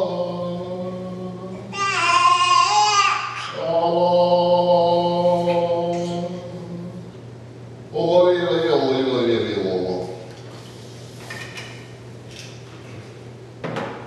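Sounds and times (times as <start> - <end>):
child squealing: 1.8 - 3.5.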